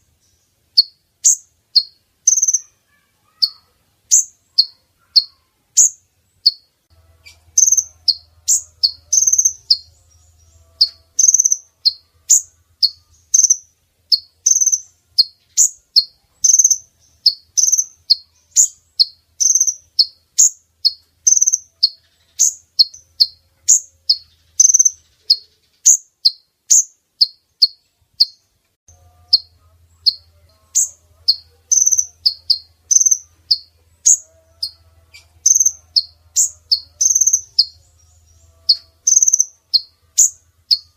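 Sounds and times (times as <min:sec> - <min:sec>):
sunbird high chirps: 0:00.0 - 0:40.9.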